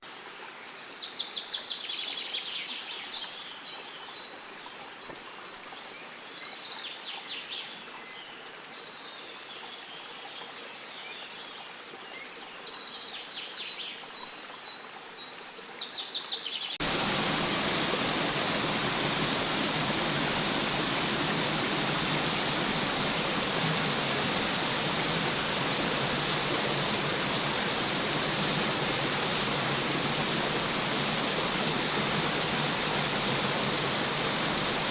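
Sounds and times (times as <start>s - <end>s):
waterfall rushing: 16.8s - 34.9s.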